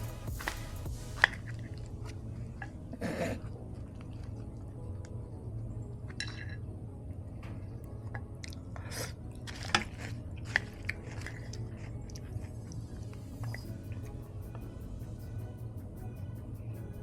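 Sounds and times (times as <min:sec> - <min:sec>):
crunchy chewing: 0:07.5 - 0:15.6.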